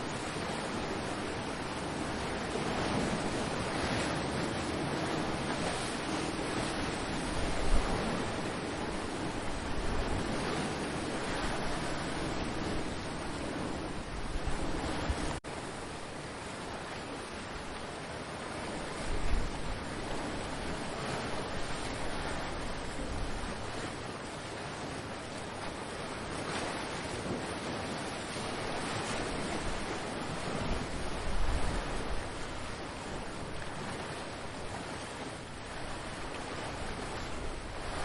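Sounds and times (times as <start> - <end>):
ocean surf on shore: 0.0 - 38.0
wind buffeting microphone: 0.0 - 38.0.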